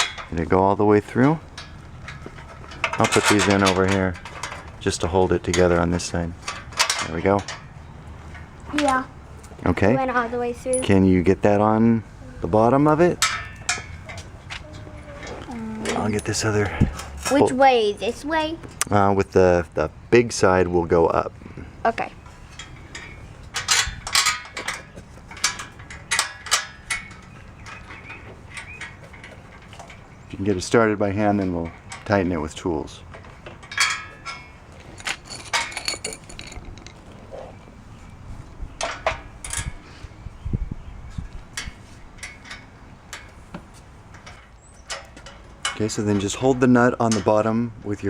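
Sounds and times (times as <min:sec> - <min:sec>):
metal parts clinking: 0:01.5 - 0:08.9, 0:22.5 - 0:32.2, 0:33.0 - 0:37.3.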